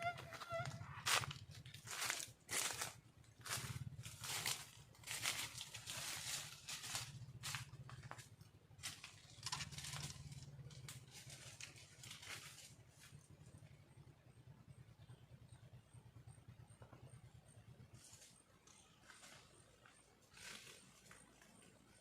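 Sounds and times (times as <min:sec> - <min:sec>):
rustling and scratching: 0:00.0 - 0:13.5, 0:17.9 - 0:22.0
low steady hum: 0:00.0 - 0:22.0.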